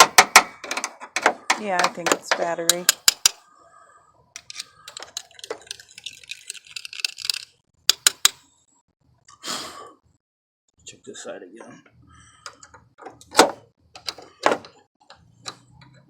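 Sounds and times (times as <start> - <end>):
sharp metallic clicks: 0.0 - 3.5, 4.4 - 8.4
hand tool scraping metal: 4.4 - 8.4.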